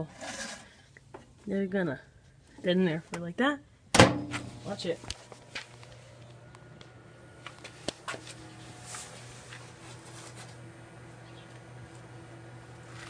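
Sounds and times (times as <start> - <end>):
microwave oven humming: 4.0 - 13.0.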